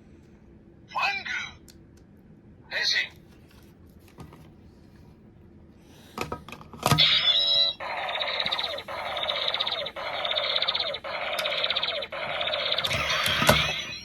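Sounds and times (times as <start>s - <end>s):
electronic toy sound effect: 7.0s - 14.0s.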